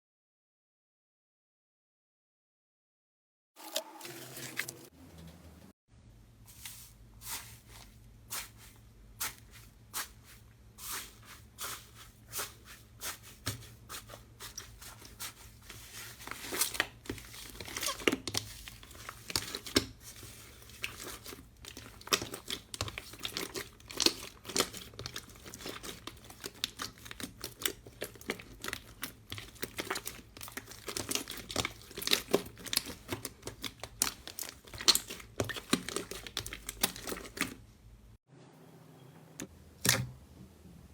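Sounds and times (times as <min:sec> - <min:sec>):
slime crackling and popping: 0:16.4 - 0:37.5.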